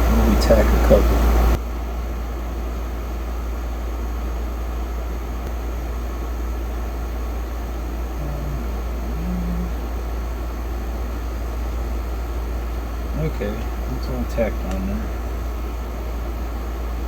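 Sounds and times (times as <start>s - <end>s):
low hum with hiss: 0.0s - 17.0s
faint low tones: 8.1s - 10.1s.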